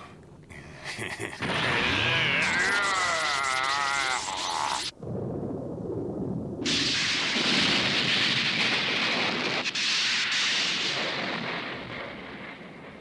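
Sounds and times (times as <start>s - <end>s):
cartoon blast rushing noise: 1.4s - 4.9s.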